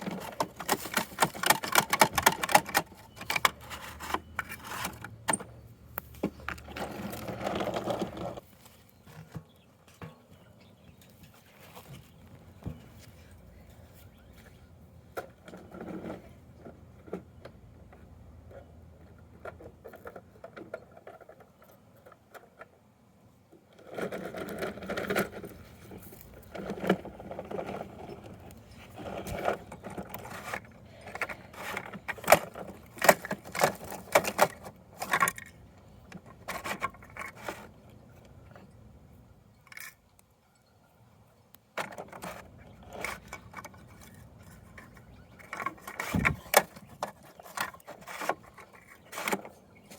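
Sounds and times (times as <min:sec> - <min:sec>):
plastic toy clicking and rattling: 0:00.0 - 0:05.1.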